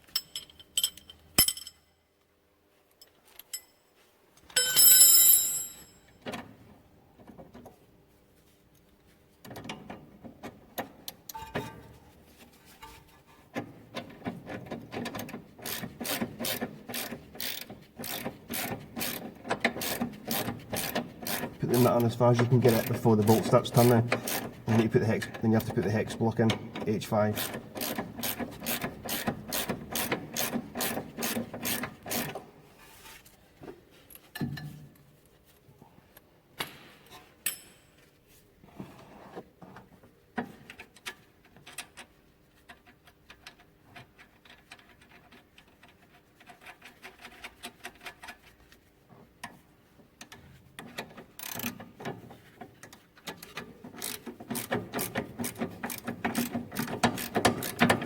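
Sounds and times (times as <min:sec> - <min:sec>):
metal tools clinking: 0:00.0 - 0:02.0, 0:04.5 - 0:06.1
ratchet spanner clicking: 0:15.6 - 0:21.6, 0:24.1 - 0:24.6, 0:27.4 - 0:32.3, 0:51.4 - 0:51.8, 0:53.4 - 0:58.0.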